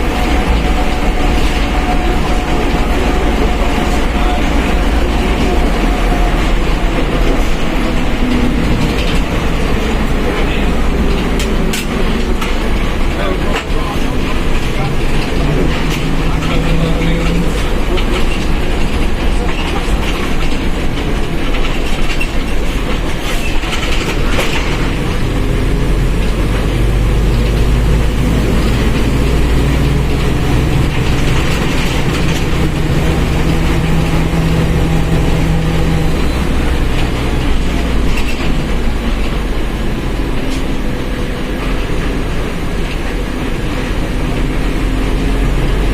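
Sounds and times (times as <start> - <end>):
bus engine rumbling: 0.0 - 45.9.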